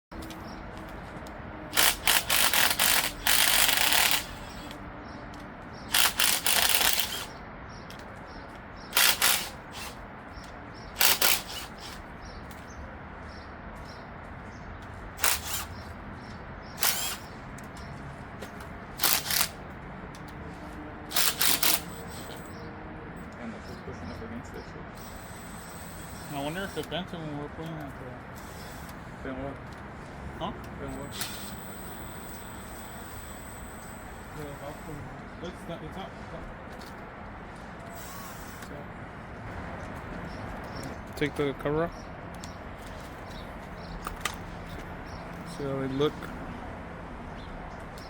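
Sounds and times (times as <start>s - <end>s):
ratchet wrench clicking: 1.8s - 4.8s, 5.9s - 7.3s, 9.0s - 10.0s, 11.0s - 12.0s, 15.2s - 15.8s, 16.8s - 17.3s, 19.0s - 19.6s, 21.1s - 22.5s.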